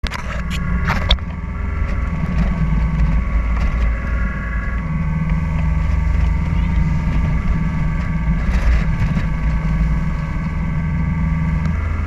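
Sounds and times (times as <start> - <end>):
loud low rumble: 0.0 - 12.0.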